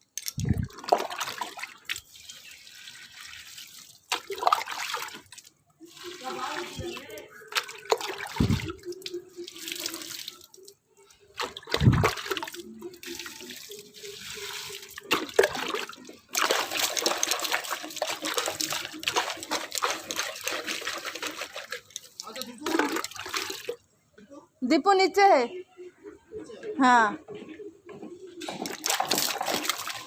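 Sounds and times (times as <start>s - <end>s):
water running and splashing: 0.2s - 23.8s, 28.4s - 30.0s.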